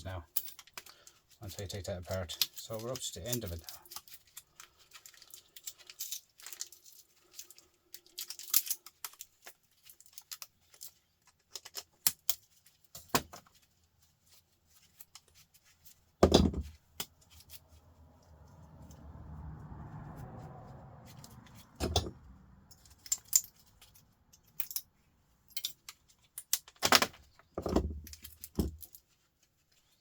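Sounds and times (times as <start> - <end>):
metal parts clicking and clinking: 0.1 - 13.6, 21.0 - 30.0.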